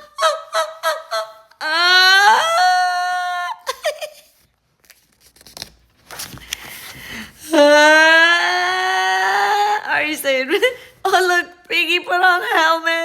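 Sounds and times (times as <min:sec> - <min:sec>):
person voicing long high aaah: 0:00.0 - 0:03.7, 0:07.4 - 0:09.9.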